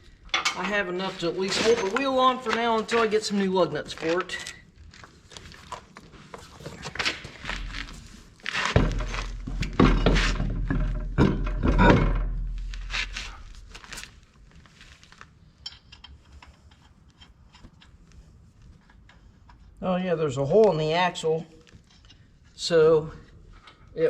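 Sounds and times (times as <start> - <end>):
metal wheel parts clunking: 0.2 - 3.0, 8.6 - 13.2.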